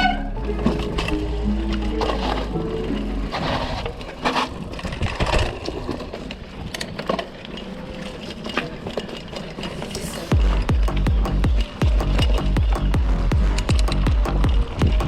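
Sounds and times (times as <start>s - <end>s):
bike chain and frame rattling: 0.0s - 15.0s
bike tyres crunching on dirt: 0.0s - 15.0s
electronic music with bass kicks: 10.3s - 15.0s.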